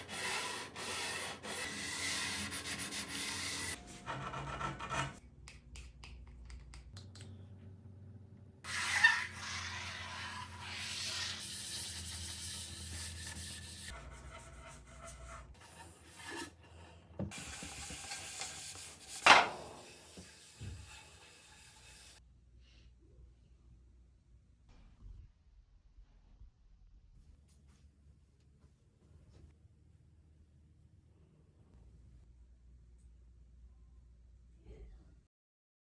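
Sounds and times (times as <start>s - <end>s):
sanding wood: 8.7s - 22.2s
sharp scrapes or knocks: 17.4s - 21.0s.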